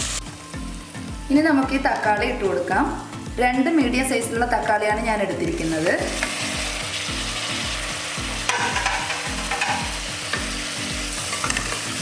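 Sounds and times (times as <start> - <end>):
vegetables sizzling in oil: 0.0 - 3.2, 4.0 - 12.0
spoon stirring and scraping pan: 5.8 - 12.0.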